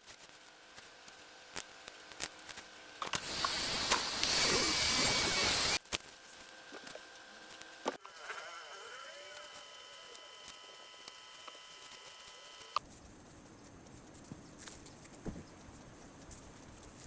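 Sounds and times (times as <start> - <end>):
hair dryer blowing: 3.2 - 5.8.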